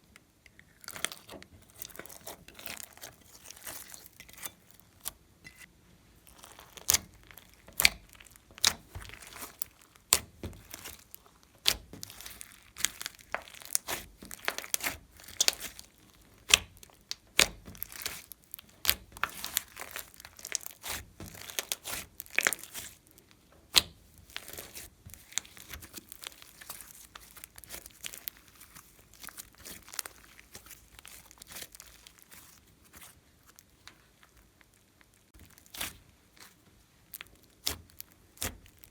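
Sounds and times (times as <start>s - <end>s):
slime clicking and popping: 37.1s - 38.9s.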